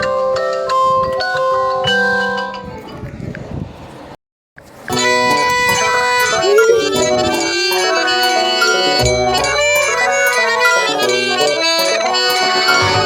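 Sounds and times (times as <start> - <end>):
instrumental ringtone melody: 4.9 - 13.0.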